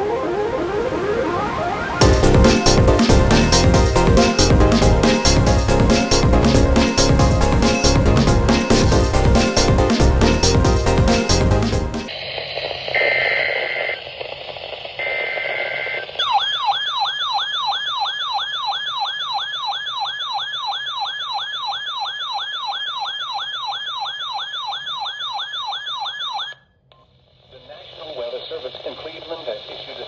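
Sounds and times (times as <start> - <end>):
warbling siren-like alert tone: 0.0 - 12.1, 16.2 - 26.6.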